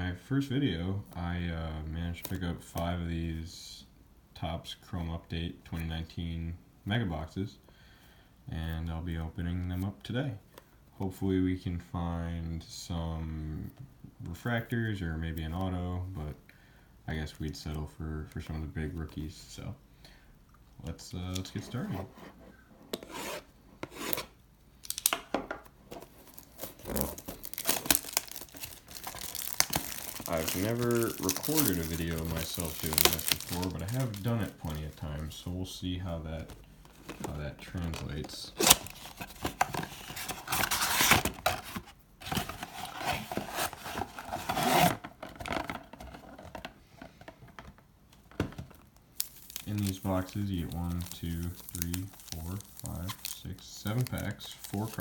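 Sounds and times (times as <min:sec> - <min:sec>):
cardboard packaging tearing: 0:26.1 - 0:35.0, 0:37.0 - 0:45.0, 0:49.2 - 0:55.0.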